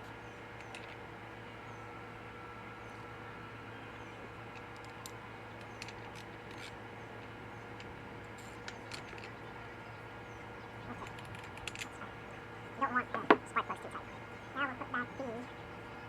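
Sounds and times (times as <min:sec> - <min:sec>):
low background hum: 0:00.0 - 0:16.0
clicks of tools being handled: 0:04.6 - 0:09.4, 0:11.0 - 0:12.0.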